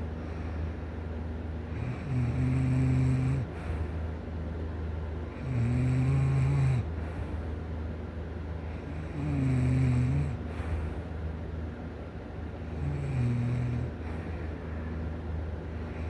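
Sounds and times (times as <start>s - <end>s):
person snoring: 1.8s - 3.6s, 5.4s - 6.9s, 8.8s - 10.4s, 12.7s - 14.0s.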